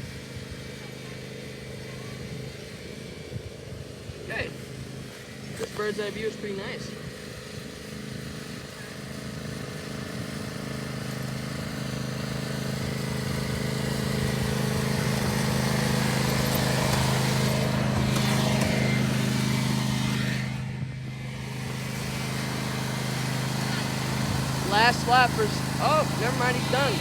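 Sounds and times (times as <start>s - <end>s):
lawn mower engine running: 0.0s - 27.0s.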